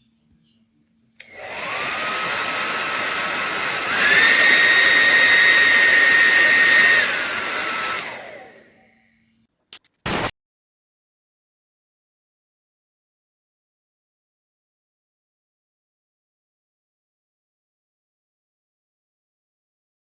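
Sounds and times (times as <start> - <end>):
hair dryer running: 1.2 - 9.0.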